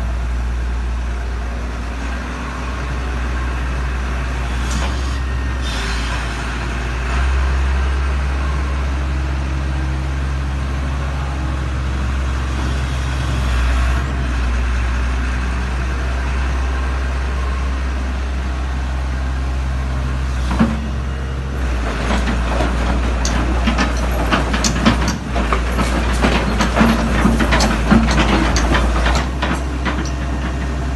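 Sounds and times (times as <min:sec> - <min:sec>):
diesel engine running: 0:00.0 - 0:30.9
sharp knocks and clattering: 0:21.8 - 0:30.9.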